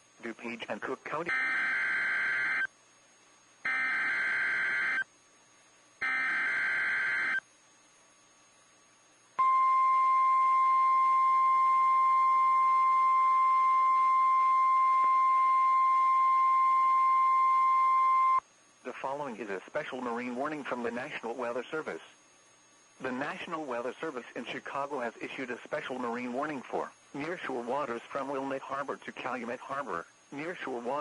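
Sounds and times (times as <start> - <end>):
screeching data tones: 0.4 - 2.7, 3.7 - 5.1, 6.0 - 7.4, 9.4 - 19.0
steady warning alarm tone: 0.4 - 2.7, 3.6 - 5.1, 6.0 - 7.4, 9.4 - 18.4.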